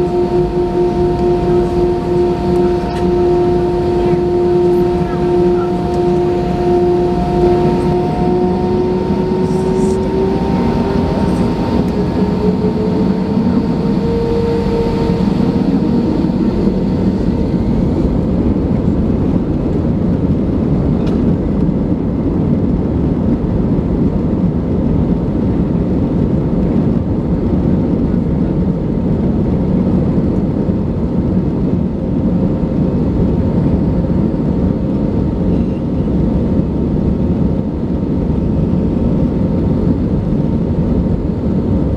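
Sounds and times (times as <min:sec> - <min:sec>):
engine whine rising in pitch: 0:00.0 - 0:27.9
jet engine rumble in cabin: 0:00.0 - 0:41.9.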